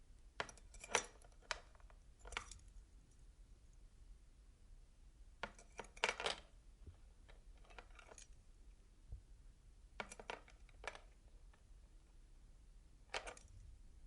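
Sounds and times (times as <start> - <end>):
metal keys jingling on wooden table: 0.4 - 1.6.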